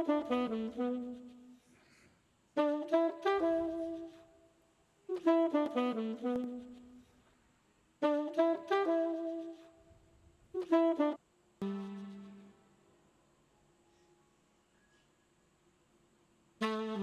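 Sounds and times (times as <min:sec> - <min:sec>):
saxophone-like horn phrase: 0:00.0 - 0:01.6, 0:02.6 - 0:04.3, 0:05.1 - 0:07.1, 0:08.0 - 0:09.8, 0:10.5 - 0:12.8, 0:16.6 - 0:17.0.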